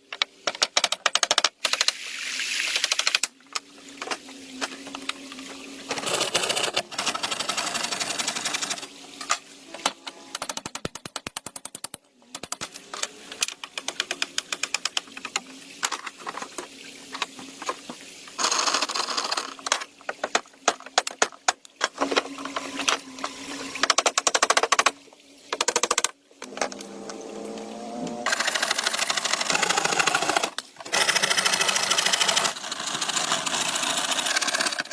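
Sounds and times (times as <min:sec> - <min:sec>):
rapid sharp clicks and knocks: 0:00.1 - 0:02.0, 0:10.4 - 0:12.8, 0:13.4 - 0:16.6, 0:23.8 - 0:26.2.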